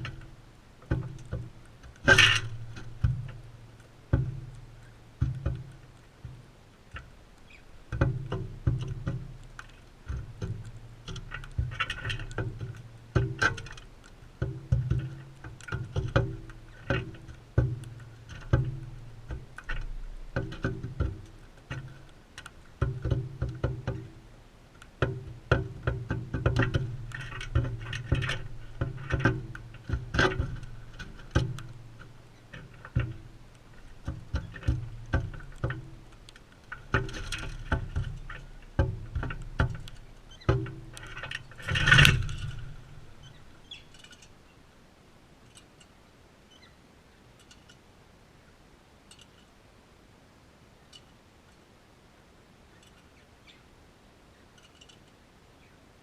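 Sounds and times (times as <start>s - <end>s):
bird beaks clicking and tapping: 0.0s - 44.4s.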